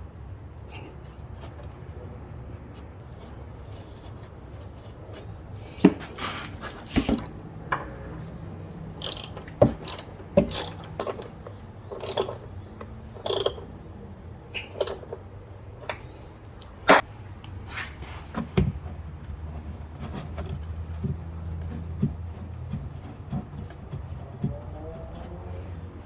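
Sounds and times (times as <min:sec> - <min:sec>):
tools and metal parts clanking: 0:09.0 - 0:13.7, 0:14.6 - 0:15.2.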